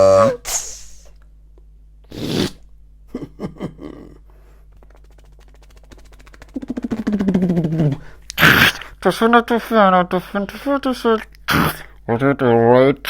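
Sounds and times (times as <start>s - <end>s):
breathy mouth hiss: 0.4s - 1.2s, 2.1s - 2.6s, 4.4s - 9.0s, 11.5s - 12.0s
buzzing vocal rattle: 3.8s - 9.1s
mouth clicks: 4.7s - 9.0s.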